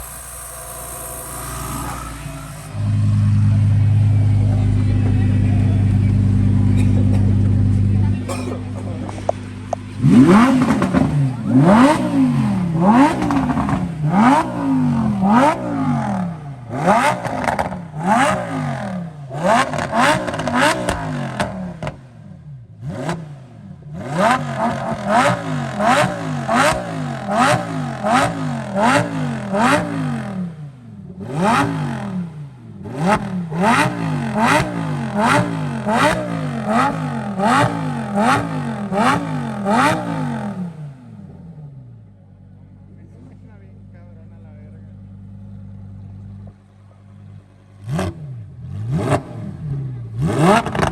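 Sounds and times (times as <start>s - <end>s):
sports car engine revving: 0.0s - 50.9s.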